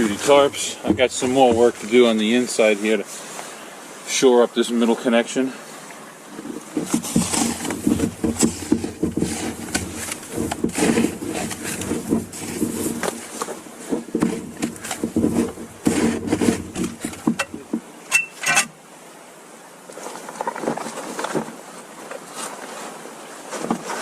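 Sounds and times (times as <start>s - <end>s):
tarps rustling and crinkling: 0.0s - 3.0s, 6.3s - 17.9s, 19.9s - 24.0s
clicks and knocks: 6.8s - 18.8s.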